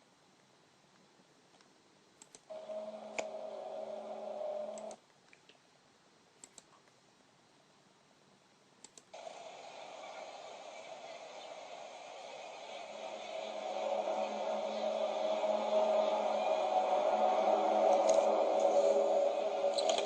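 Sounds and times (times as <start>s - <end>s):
steady multi-tone hum: 0.0s - 5.1s, 5.7s - 20.0s
sharp clicks: 2.2s - 2.5s, 6.4s - 7.0s, 8.8s - 9.1s
noisy rushing sound: 9.2s - 20.0s.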